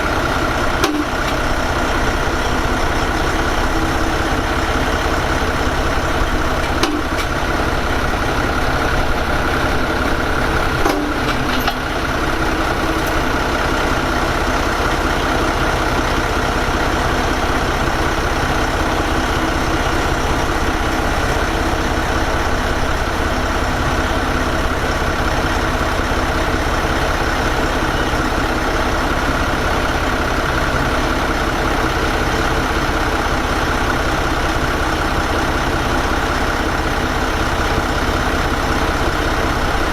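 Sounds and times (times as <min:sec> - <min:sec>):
diesel machinery droning: 0:00.0 - 0:39.9.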